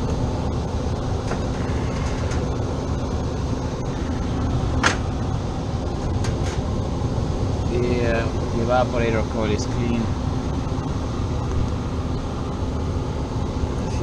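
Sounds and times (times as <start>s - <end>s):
air conditioner humming: 0.0s - 14.0s.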